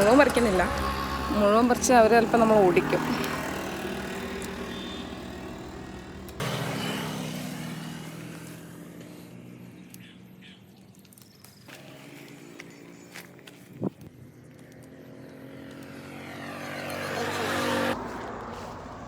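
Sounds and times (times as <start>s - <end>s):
vehicle engine passing: 0.0s - 10.6s, 14.4s - 19.0s.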